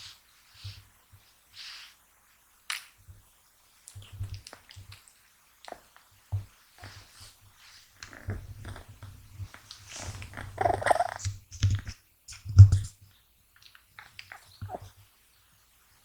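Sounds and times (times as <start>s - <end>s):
kitten snoring: 8.1s - 9.0s, 9.9s - 11.2s.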